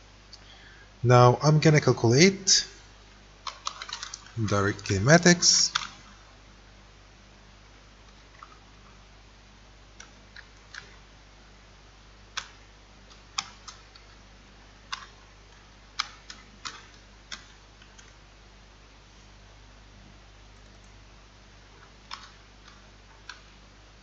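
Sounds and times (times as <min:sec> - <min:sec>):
faint electrical hum: 0:00.0 - 0:24.0
computer keys and mouse clicking: 0:03.4 - 0:06.0, 0:10.0 - 0:11.0, 0:12.4 - 0:14.2, 0:14.9 - 0:18.2, 0:20.6 - 0:21.0, 0:22.1 - 0:23.5.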